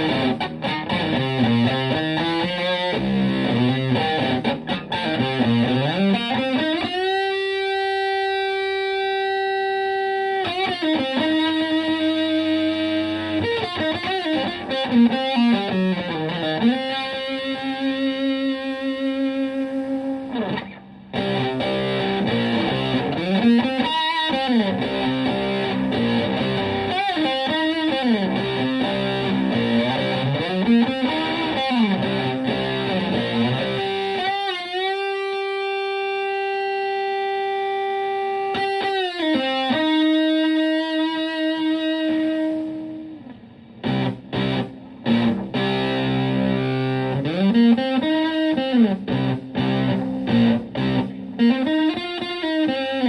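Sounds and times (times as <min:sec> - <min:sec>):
distorted electric guitar riffs: 0:00.0 - 0:53.0.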